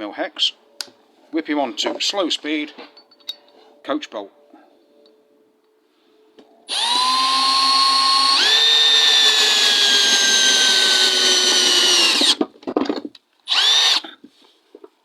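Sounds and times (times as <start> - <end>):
drill motor whine: 6.7 - 12.4, 13.5 - 14.0.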